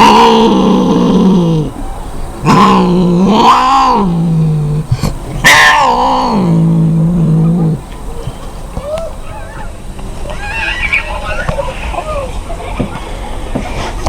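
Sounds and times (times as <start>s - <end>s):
cat yowling: 0.0s - 9.6s.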